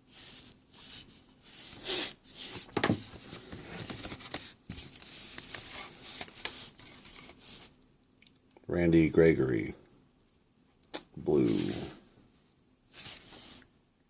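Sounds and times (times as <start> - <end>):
cards being handled: 2.4 - 7.7.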